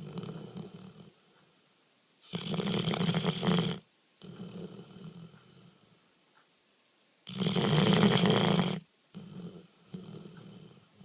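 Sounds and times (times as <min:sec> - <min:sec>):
dog snoring: 0:00.0 - 0:06.2, 0:07.3 - 0:11.0
dog breathing quietly: 0:00.0 - 0:06.5, 0:07.4 - 0:11.0.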